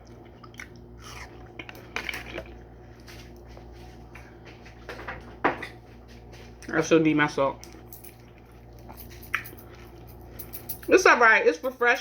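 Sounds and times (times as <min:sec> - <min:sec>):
chewing fruit: 0:00.0 - 0:04.4, 0:07.5 - 0:10.4.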